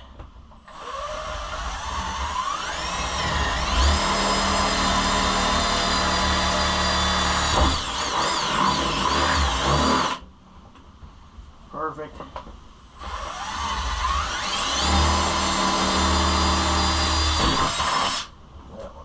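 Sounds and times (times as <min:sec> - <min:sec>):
electric drill boring plastic: 0:00.7 - 0:10.2, 0:13.0 - 0:18.3.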